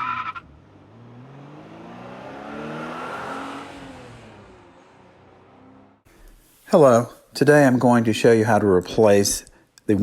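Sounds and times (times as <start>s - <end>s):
car engine accelerating: 0.0s - 6.1s.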